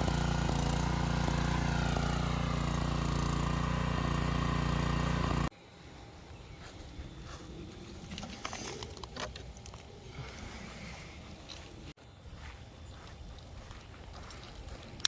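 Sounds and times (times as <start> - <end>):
small engine running: 0.0 - 5.6.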